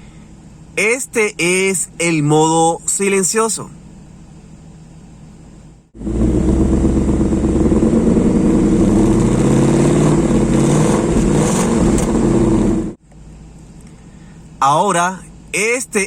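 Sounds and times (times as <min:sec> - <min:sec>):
car engine exhaust deep note: 0:06.0 - 0:13.0.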